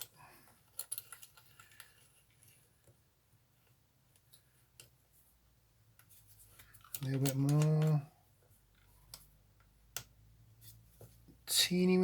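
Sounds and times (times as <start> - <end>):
light clicks of small parts: 0.0 - 2.2, 6.0 - 8.1, 8.7 - 10.2.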